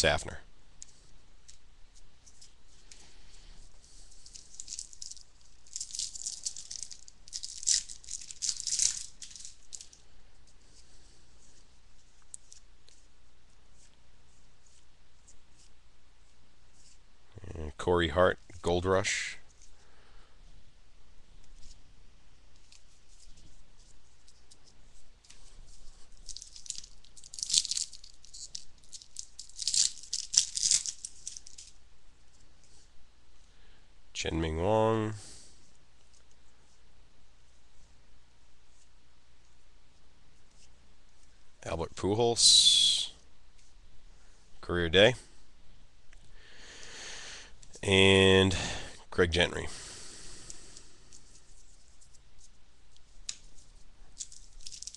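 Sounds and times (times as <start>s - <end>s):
trading cards rustling: 0.8s - 13.1s, 22.5s - 32.8s, 50.2s - 54.9s
foil wrapper crinkling and tearing: 3.9s - 10.0s, 25.4s - 31.8s, 54.2s - 54.9s.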